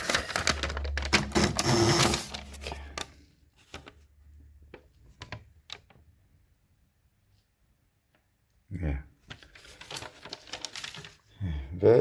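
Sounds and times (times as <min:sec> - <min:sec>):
typewriter clattering: 0:00.0 - 0:02.8.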